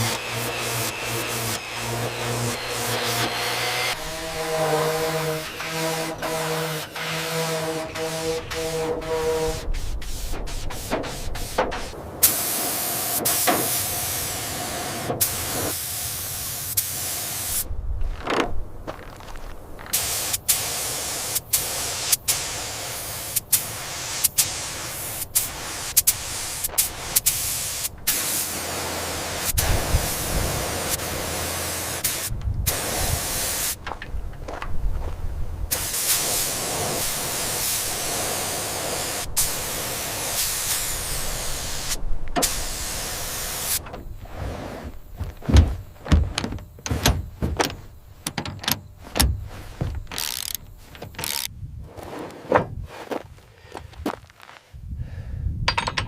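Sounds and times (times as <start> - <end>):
steady spraying hiss: 0.0 - 17.7, 19.9 - 34.0, 35.7 - 51.5
mechanical clicks and knocks: 45.5 - 51.5.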